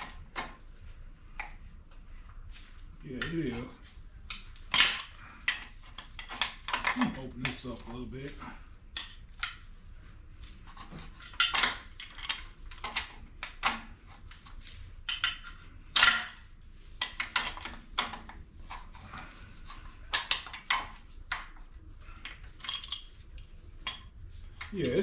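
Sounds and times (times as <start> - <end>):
hand tools clinking on metal: 23.9 - 25.0.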